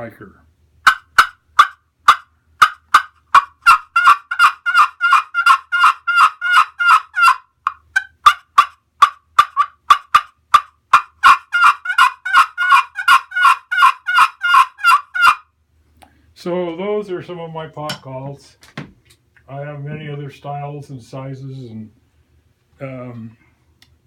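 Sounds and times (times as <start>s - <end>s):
turkey call yelps: 0.9s - 15.5s.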